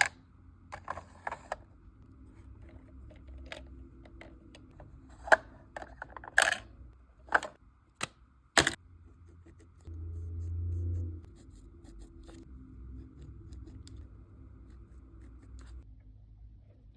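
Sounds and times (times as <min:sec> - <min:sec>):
low hum: 0:08.8 - 0:16.9.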